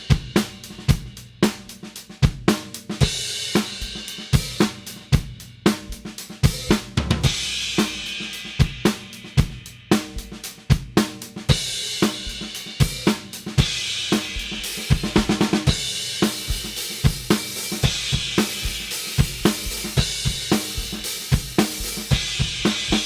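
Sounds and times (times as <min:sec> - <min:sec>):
kick and snare drums: 0:00.0 - 0:23.0
crashing cymbals: 0:06.5 - 0:09.9.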